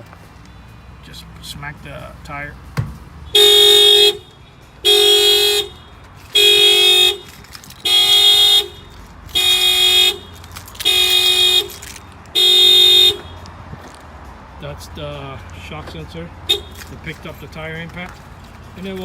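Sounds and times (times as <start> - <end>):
car alarm horn blasts: 3.2 - 13.4, 16.5 - 16.9.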